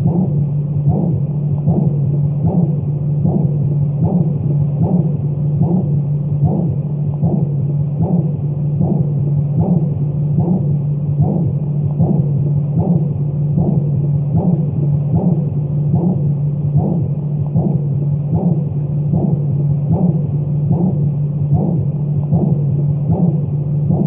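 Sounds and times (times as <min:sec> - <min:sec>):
heartbeat: 0:00.0 - 0:24.0
low hum: 0:00.0 - 0:24.0.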